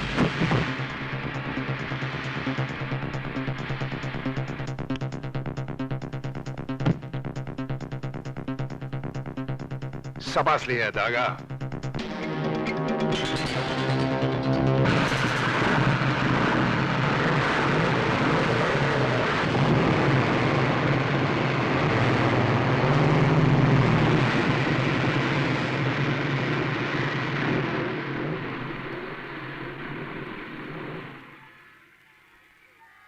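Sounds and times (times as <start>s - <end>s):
loud engine noise: 0.0s - 4.7s, 12.0s - 31.3s.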